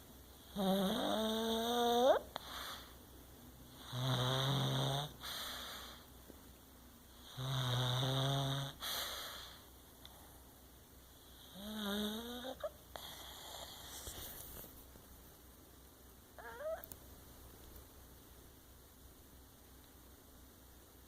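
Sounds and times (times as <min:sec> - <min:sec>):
dog snoring: 0:00.5 - 0:02.9, 0:03.7 - 0:06.0, 0:07.1 - 0:09.6, 0:11.2 - 0:14.1.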